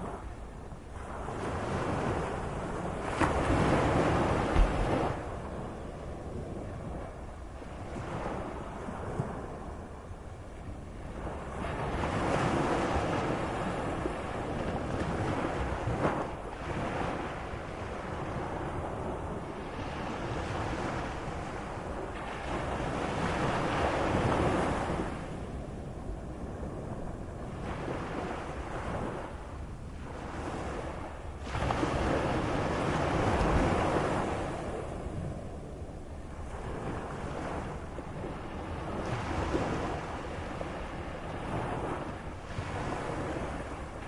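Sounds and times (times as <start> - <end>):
sea waves breaking: 1.0 - 44.0.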